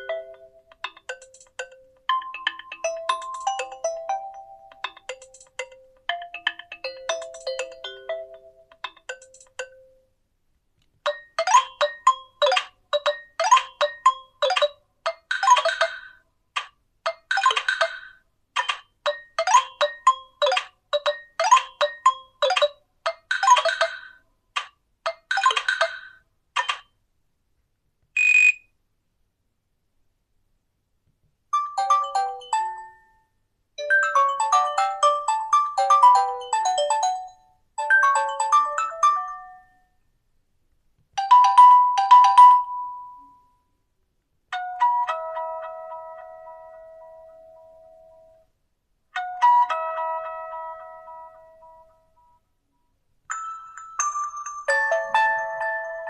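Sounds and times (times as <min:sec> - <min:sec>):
phone ringtone melody: 0:00.0 - 0:10.0, 0:11.1 - 0:14.8, 0:19.1 - 0:22.8, 0:31.6 - 0:33.1, 0:33.8 - 0:39.8, 0:41.2 - 0:43.4, 0:53.3 - 0:56.0.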